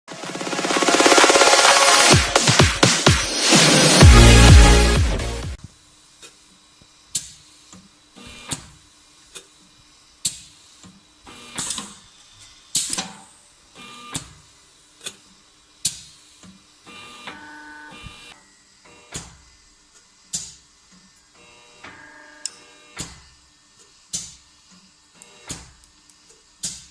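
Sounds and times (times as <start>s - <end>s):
machine whine: 0.1s - 5.6s.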